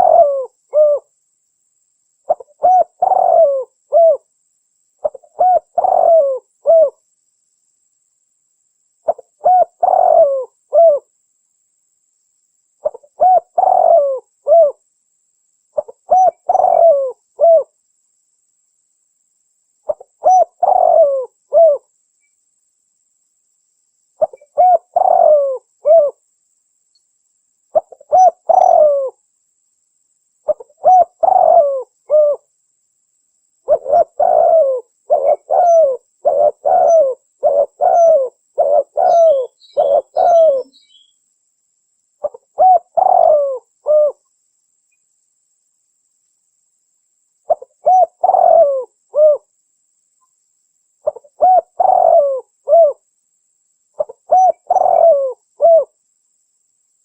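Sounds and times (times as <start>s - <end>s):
dove cooing: 0.0s - 1.1s, 2.3s - 4.3s, 5.0s - 7.0s, 9.0s - 11.1s, 12.8s - 14.8s, 15.8s - 17.7s, 19.9s - 21.9s, 24.2s - 26.2s, 27.7s - 29.2s, 30.5s - 32.5s, 33.6s - 41.1s, 42.2s - 44.2s, 47.5s - 49.5s, 51.0s - 53.0s, 54.0s - 56.0s.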